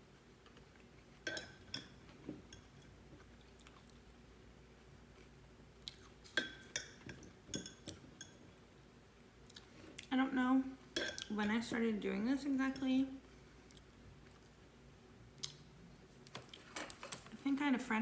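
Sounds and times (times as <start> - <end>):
chewing with wet mouth noises: 3.2 - 4.1.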